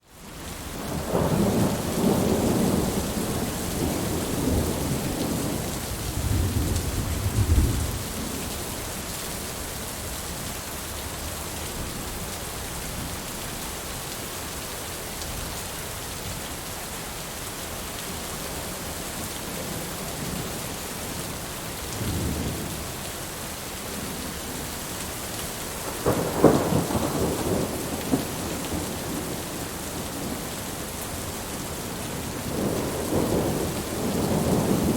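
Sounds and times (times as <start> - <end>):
heavy rain: 0.0 - 34.9
rolling thunder: 0.9 - 8.4, 25.8 - 30.6, 32.2 - 34.9.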